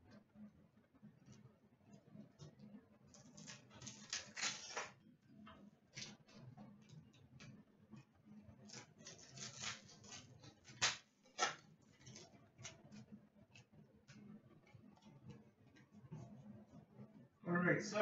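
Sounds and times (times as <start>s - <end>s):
card packaging rustling: 3.2s - 5.0s, 8.7s - 13.0s.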